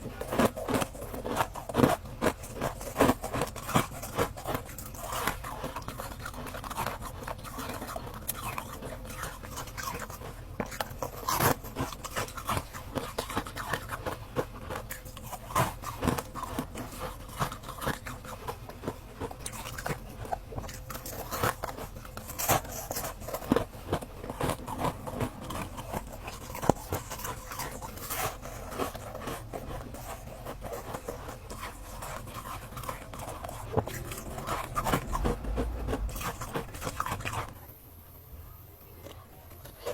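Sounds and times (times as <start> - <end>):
ice crunching between teeth: 0.0 - 37.6.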